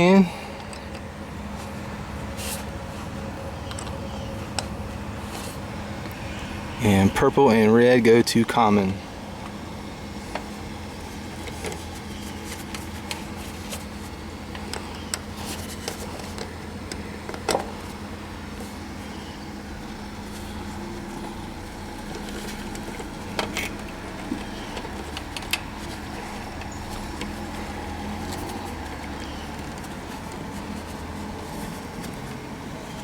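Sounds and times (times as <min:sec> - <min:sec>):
low machinery hum: 0:00.0 - 0:33.0.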